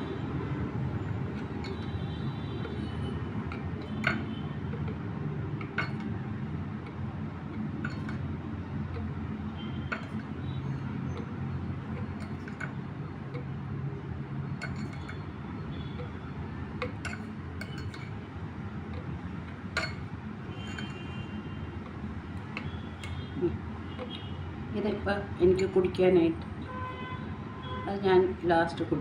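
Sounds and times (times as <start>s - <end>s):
spoon clinking on glass: 1.3s - 2.0s, 3.5s - 5.0s, 5.6s - 6.2s, 7.5s - 8.3s, 9.0s - 12.8s, 14.6s - 15.3s, 16.8s - 18.2s, 19.0s - 21.2s, 25.5s - 26.0s.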